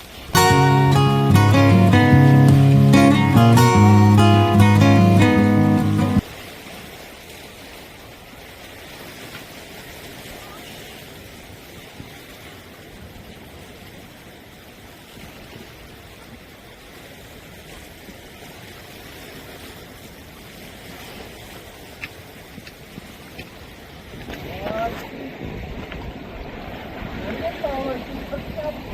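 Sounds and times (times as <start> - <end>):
waves washing against rocks: 6.2 - 28.9
wind noise: 22.5 - 28.9.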